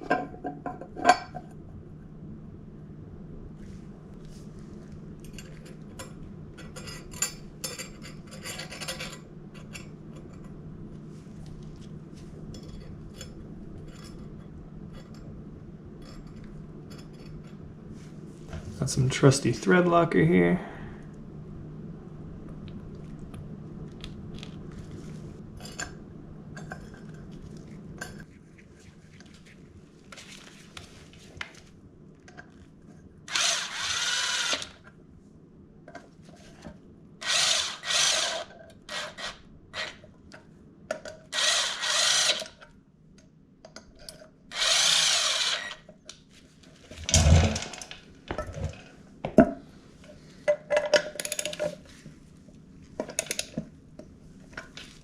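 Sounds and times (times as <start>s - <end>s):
tools and parts clattering: 5.3s - 10.4s, 47.0s - 49.0s, 50.5s - 51.8s
cordless drill running in bolts: 33.3s - 34.8s, 37.2s - 40.0s, 41.3s - 42.6s, 44.5s - 45.8s.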